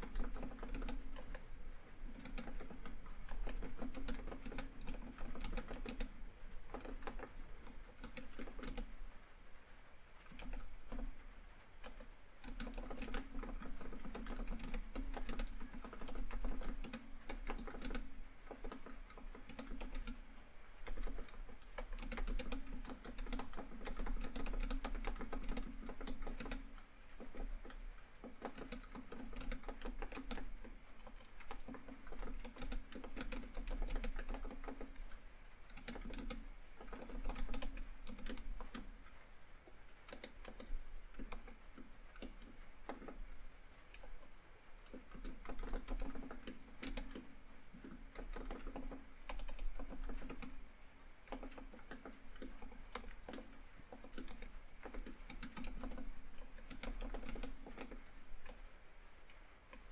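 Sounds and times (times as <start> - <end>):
typing on laptop keyboard: 0.0 - 9.0, 10.2 - 39.2, 39.9 - 58.6
rain on a tin roof: 5.6 - 22.0.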